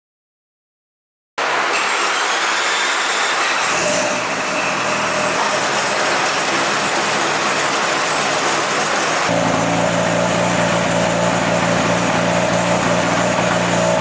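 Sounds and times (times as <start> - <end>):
rotary engine running: 3.8 - 14.0.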